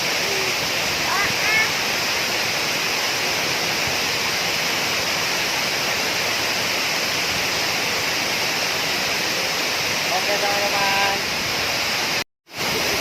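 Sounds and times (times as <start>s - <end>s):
waterfall water rushing: 0.0s - 13.0s.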